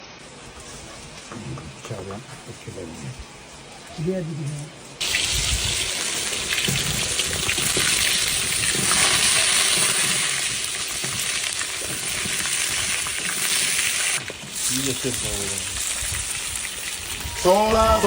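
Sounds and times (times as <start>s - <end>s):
food sizzling in hot oil: 5.0s - 18.0s.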